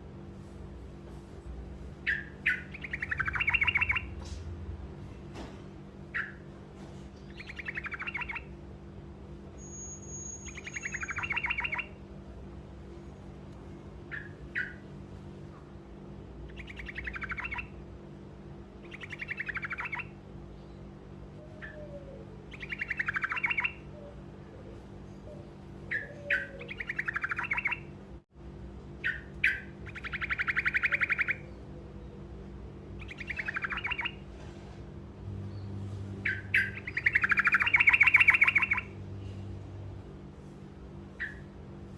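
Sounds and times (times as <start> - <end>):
steady low hum: 0.0 - 41.9
songbird singing rolling trills: 2.0 - 4.2, 7.2 - 8.6, 9.6 - 12.0, 14.0 - 14.9, 16.4 - 17.8, 18.8 - 27.9, 29.0 - 34.2, 35.4 - 39.4.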